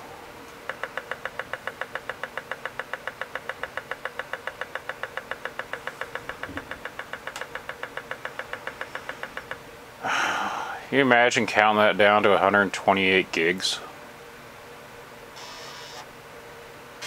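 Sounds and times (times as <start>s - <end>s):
faint steady hum: 0.0s - 17.0s
computer speaker ticking: 0.7s - 9.6s.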